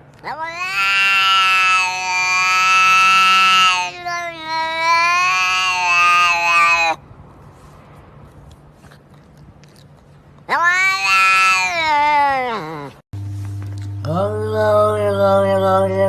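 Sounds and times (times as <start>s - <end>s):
cat meowing: 0.2s - 7.0s, 10.4s - 13.0s.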